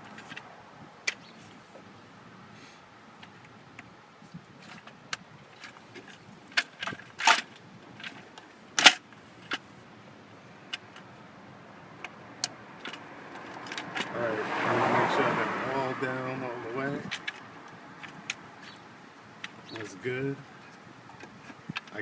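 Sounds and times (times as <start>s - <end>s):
clicks and snaps of ignition parts: 4.6s - 9.6s, 12.0s - 14.1s, 17.0s - 19.9s, 20.6s - 22.0s.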